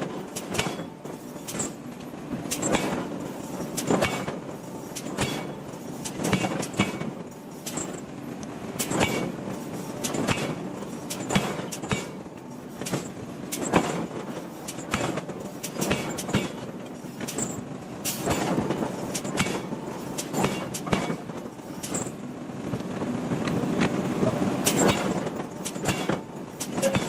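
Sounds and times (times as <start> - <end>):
steady background noise: 0.0 - 27.0
hammer striking hot iron: 0.4 - 1.8, 5.0 - 7.0, 10.0 - 12.2, 19.1 - 21.2, 24.6 - 27.0.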